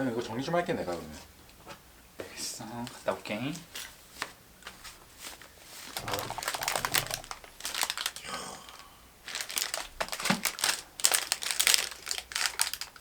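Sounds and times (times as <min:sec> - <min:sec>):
packaging crinkling: 0:05.2 - 0:13.0.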